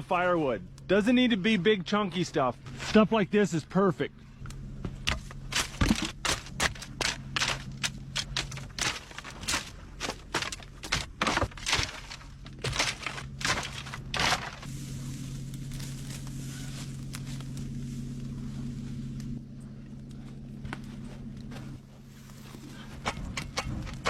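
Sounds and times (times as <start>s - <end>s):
steady low drone: 0.0s - 24.0s
sticks snapping: 4.5s - 14.7s.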